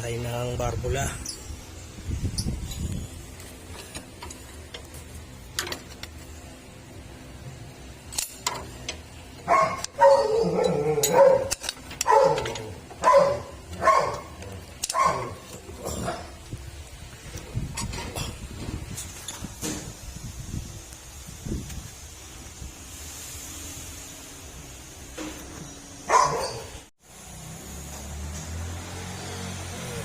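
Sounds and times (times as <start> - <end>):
dog barking: 9.4 - 15.5, 26.1 - 26.8.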